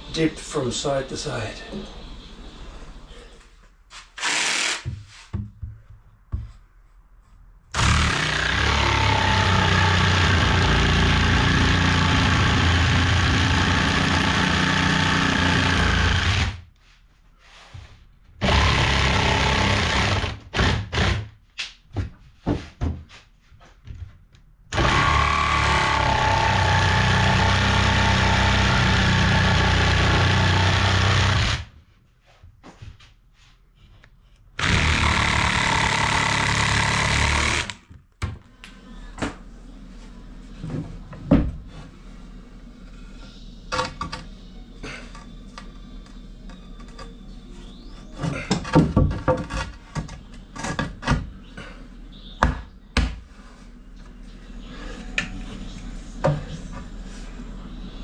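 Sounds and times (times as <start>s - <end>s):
power tool motor running: 4.2s - 4.9s, 7.8s - 16.6s, 18.4s - 21.1s, 24.7s - 31.7s, 34.6s - 37.8s.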